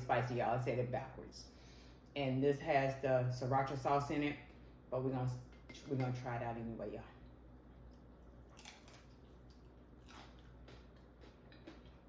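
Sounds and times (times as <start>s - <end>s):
crunching and chewing food: 7.3s - 12.0s.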